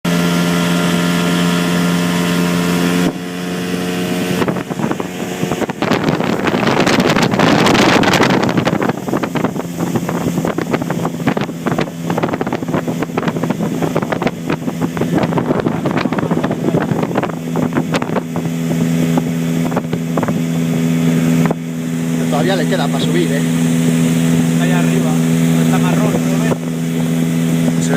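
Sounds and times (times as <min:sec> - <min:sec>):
motorboat engine hum: 0:00.0 - 0:27.9
rush of water: 0:00.1 - 0:27.9
wind buffeting microphone: 0:03.0 - 0:27.9
hull knocking and splashing: 0:03.1 - 0:24.6.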